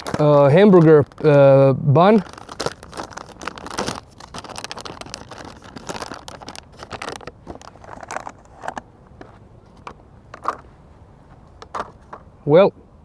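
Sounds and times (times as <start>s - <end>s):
pouch crackling and crinkling: 0.0s - 8.8s.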